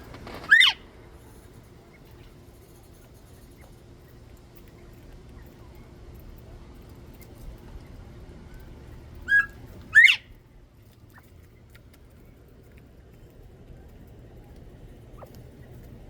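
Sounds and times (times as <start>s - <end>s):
quail calling: 0.0s - 0.8s, 9.3s - 10.3s.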